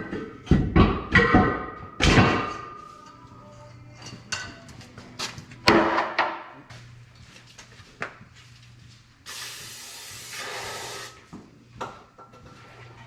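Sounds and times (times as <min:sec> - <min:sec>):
spraying hiss: 0:09.3 - 0:11.2.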